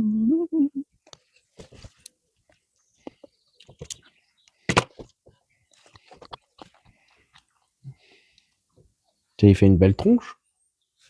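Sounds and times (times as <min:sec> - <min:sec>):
person humming: 0:00.0 - 0:00.9.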